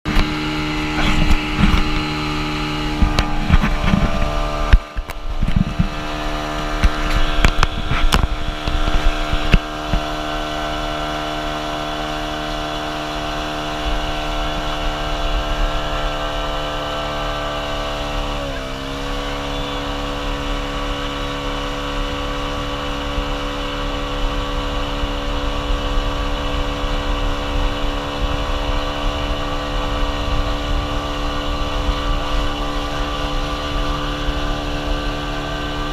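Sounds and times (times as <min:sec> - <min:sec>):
motorboat engine running: 0:00.0 - 0:35.9
sharp knocks and thumps: 0:02.9 - 0:06.0.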